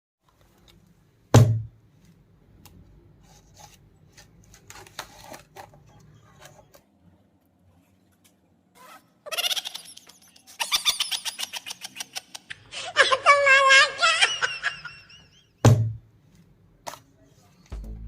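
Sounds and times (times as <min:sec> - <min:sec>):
objects being handled: 0:02.0 - 0:07.0
low hum: 0:17.7 - 0:18.0
loud thump: 0:17.8 - 0:18.0.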